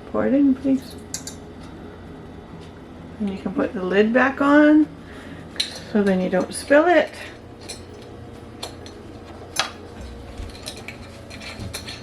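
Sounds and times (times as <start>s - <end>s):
utensils and containers clinking: 0.7s - 1.4s, 5.6s - 12.0s.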